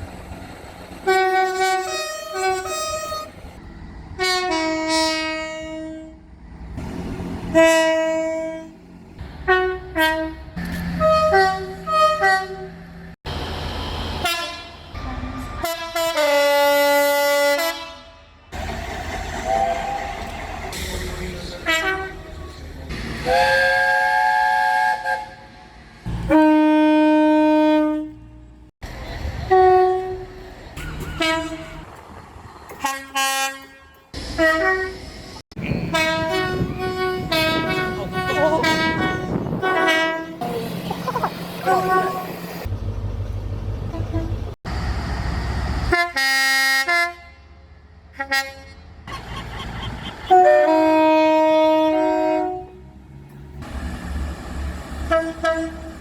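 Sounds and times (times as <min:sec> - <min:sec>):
low rumble of trains: 0:00.0 - 0:56.0
train horns: 0:01.0 - 0:03.5, 0:04.1 - 0:06.3, 0:07.4 - 0:12.8, 0:14.1 - 0:18.7, 0:21.5 - 0:32.0, 0:32.7 - 0:42.7, 0:43.9 - 0:44.6, 0:45.8 - 0:49.1, 0:50.2 - 0:53.0, 0:54.9 - 0:56.0.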